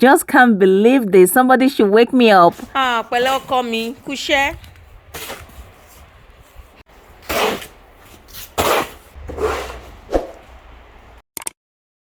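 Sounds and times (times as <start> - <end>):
wind rumble on microphone: 4.0 - 6.8
short rough noises: 6.9 - 11.2.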